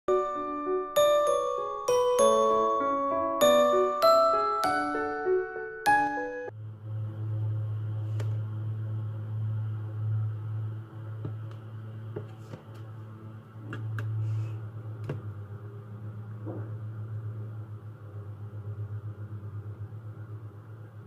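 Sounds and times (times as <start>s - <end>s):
steady low hum: 6.5s - 21.0s.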